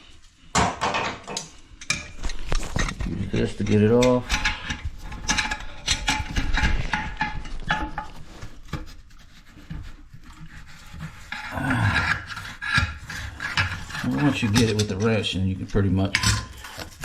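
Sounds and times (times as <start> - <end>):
wrench scraping and clicking on nut: 10.9 - 15.2.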